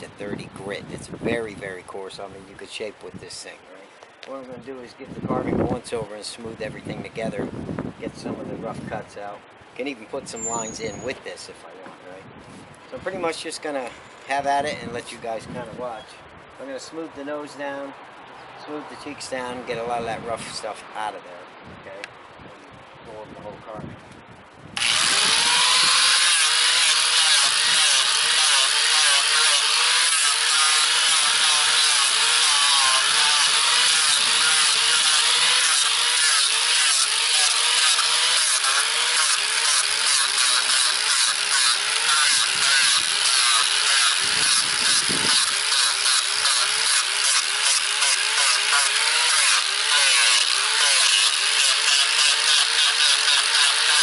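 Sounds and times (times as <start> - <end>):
angle grinder sanding wood: 24.8 - 54.0.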